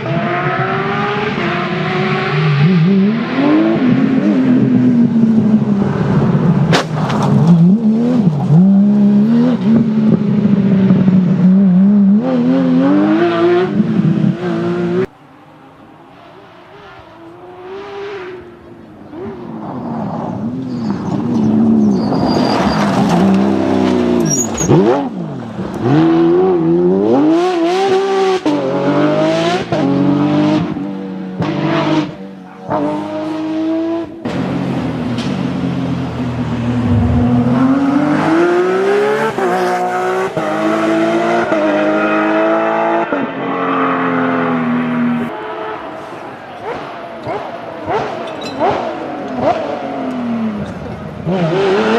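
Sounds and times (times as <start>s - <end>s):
sports car engine revving: 31.4s - 43.0s
car passing by: 36.5s - 40.8s.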